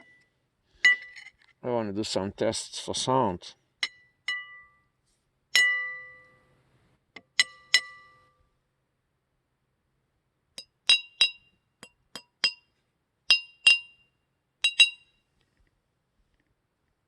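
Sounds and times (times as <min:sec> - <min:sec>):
wine glasses clinking: 0:14.6 - 0:15.1.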